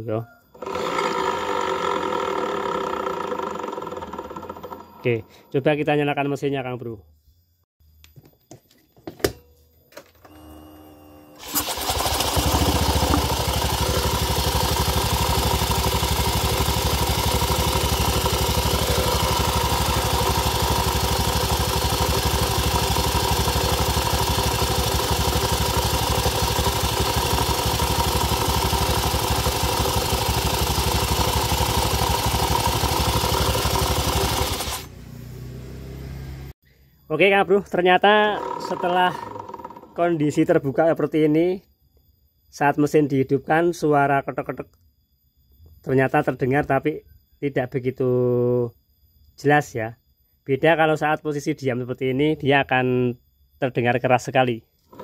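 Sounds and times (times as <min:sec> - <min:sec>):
scooter engine idling: 0:00.7 - 0:05.0, 0:11.4 - 0:35.7.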